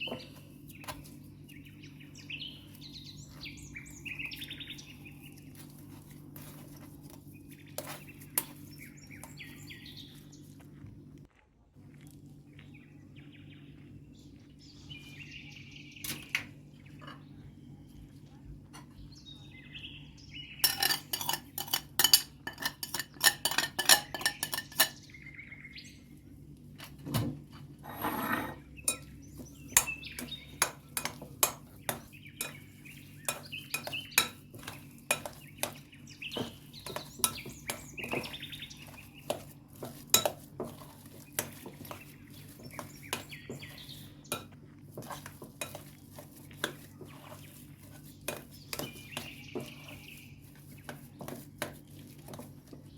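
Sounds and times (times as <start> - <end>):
utensils clinking against dishes: 20.6 - 25.1, 27.9 - 50.2.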